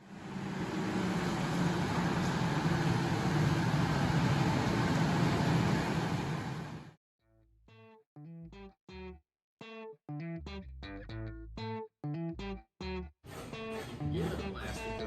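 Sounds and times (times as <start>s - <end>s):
vehicle engine hum and rush: 0.0s - 7.0s.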